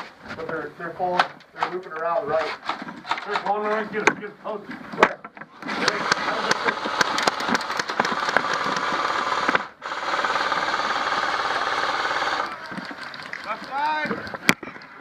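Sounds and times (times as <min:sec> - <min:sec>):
airsoft guns firing automatic: 0:05.6 - 0:14.3
gearbox rattling: 0:05.7 - 0:09.6.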